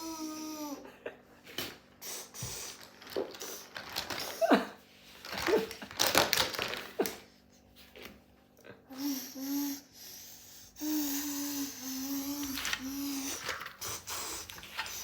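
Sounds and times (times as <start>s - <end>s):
child making mouth sound effects: 10.8s - 14.4s.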